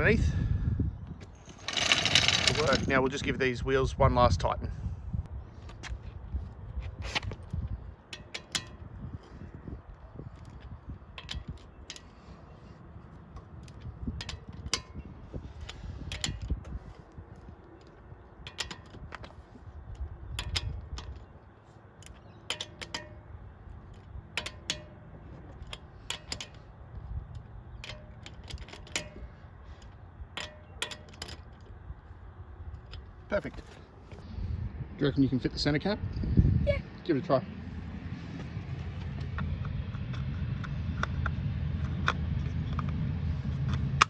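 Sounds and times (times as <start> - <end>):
wrench clicking and clanking: 1.4 - 3.0, 18.4 - 19.1, 20.3 - 21.3, 22.0 - 23.3, 23.9 - 31.7.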